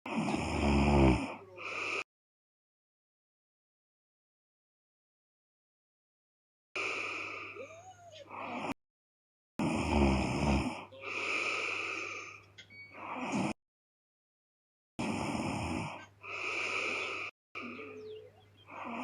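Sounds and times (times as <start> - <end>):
woman snoring: 0.1 - 2.1, 6.8 - 8.8, 9.6 - 13.6, 15.0 - 18.0, 18.7 - 19.0.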